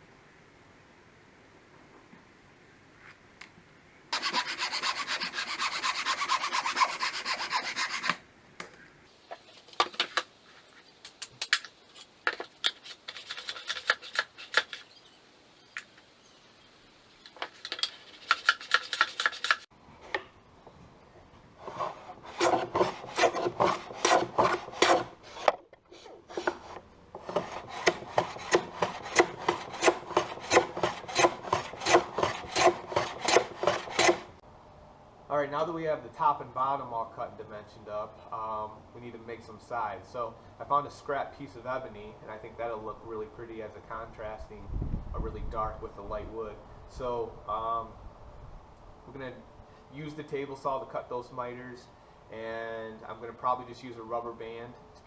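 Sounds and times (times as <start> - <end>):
hand tool scraping wood: 4.2 - 8.2, 9.2 - 16.0, 17.2 - 19.7, 21.6 - 34.3.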